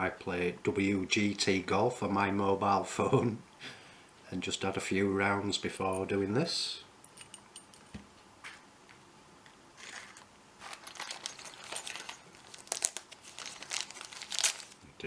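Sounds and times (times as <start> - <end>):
wrapping crinkling and tearing: 9.8 - 14.8.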